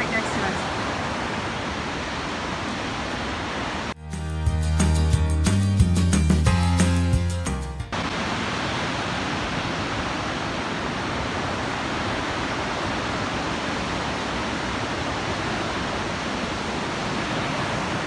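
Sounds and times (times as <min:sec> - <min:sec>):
river water rushing: 0:00.0 - 0:04.0, 0:07.9 - 0:18.0
background music: 0:04.0 - 0:07.9.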